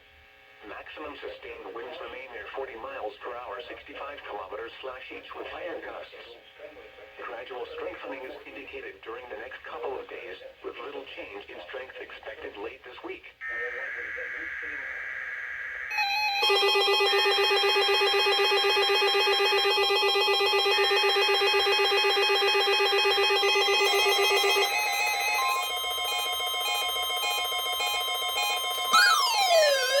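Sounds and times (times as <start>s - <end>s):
stepping data burst: 13.4s - 16.4s
pulsing buzzy electronic alarm: 13.4s - 30.0s
rising and falling siren wail: 13.4s - 30.0s
steady alarm tones: 13.4s - 30.0s.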